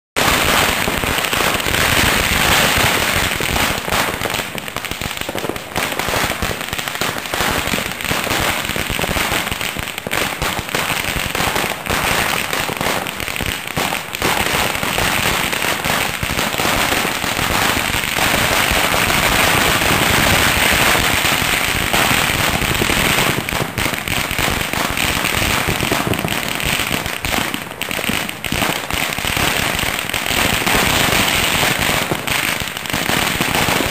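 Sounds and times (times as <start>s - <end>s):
string of firecrackers going off: 0.2s - 33.9s.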